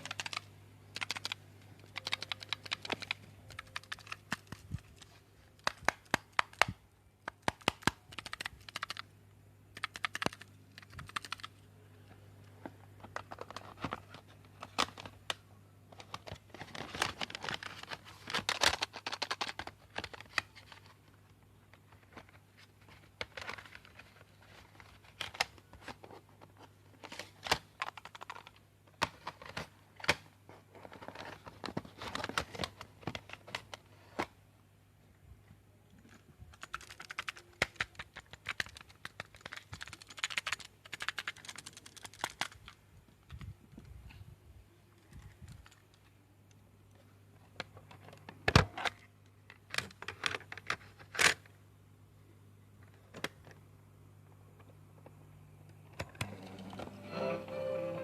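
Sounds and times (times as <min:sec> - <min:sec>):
plastic cassette case clicking: 0:27.0 - 0:30.2.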